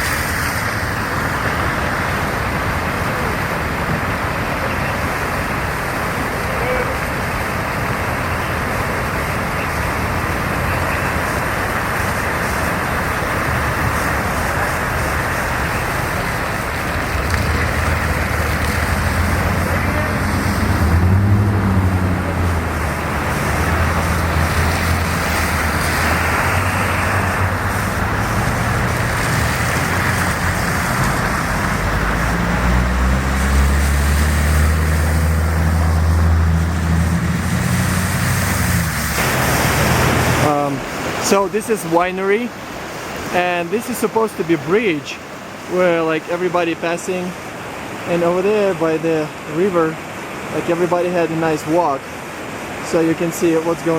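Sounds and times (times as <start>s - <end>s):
vehicle engine hum: 0.0s - 41.2s
floodwater rushing: 0.0s - 53.9s.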